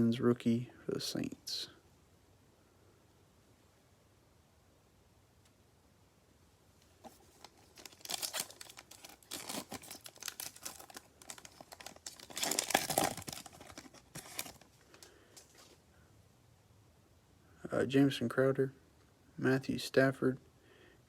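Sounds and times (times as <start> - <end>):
plastic wrapper tearing and crinkling: 7.1 - 15.7.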